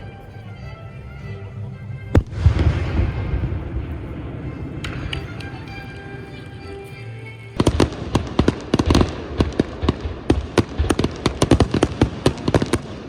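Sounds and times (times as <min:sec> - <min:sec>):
music with steady tones: 0:00.0 - 0:09.9
fireworks crackling bangs: 0:02.1 - 0:13.0.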